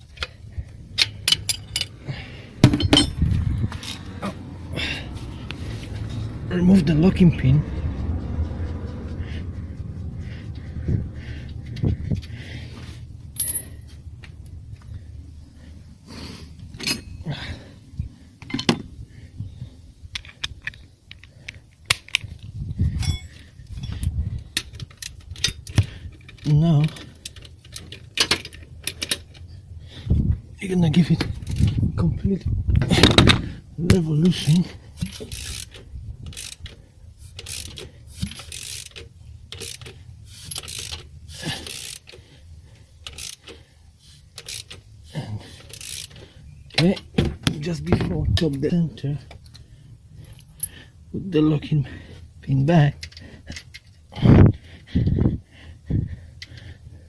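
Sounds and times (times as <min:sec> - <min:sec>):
metal tools clinking and knocking: 0:01.0 - 0:02.0, 0:02.6 - 0:04.1, 0:13.3 - 0:13.9, 0:16.7 - 0:17.4, 0:21.9 - 0:29.5, 0:34.3 - 0:36.7, 0:37.4 - 0:42.1
ratchet wrench clicking: 0:23.8 - 0:29.4, 0:31.4 - 0:31.8, 0:35.0 - 0:42.2, 0:42.9 - 0:45.0, 0:45.6 - 0:47.0.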